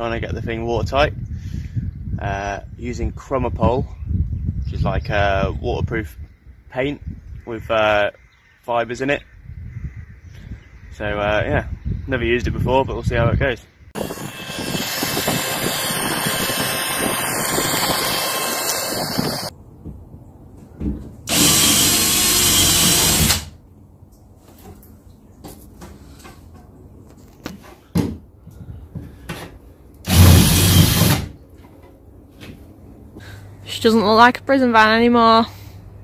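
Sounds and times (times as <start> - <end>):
power drill running: 14.0 - 19.5, 21.3 - 23.5, 30.1 - 31.3.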